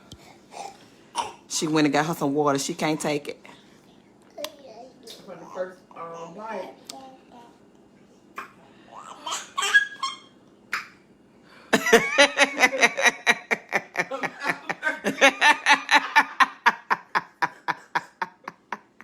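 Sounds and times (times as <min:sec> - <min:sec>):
hearty laughter: 0:11.8 - 0:19.0.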